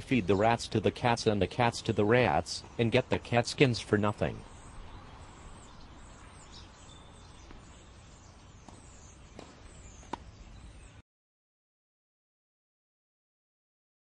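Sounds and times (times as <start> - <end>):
outdoor ambience: 0.0 - 11.0.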